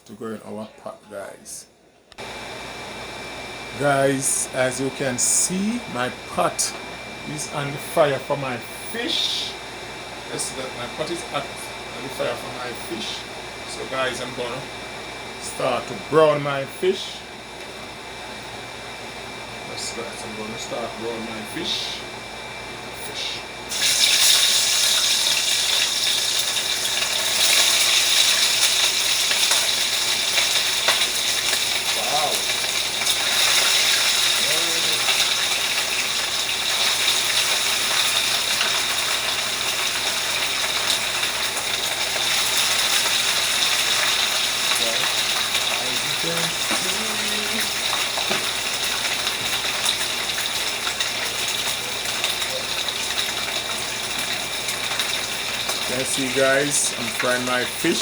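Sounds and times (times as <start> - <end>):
fish sizzling in a pot: 23.7 - 58.0.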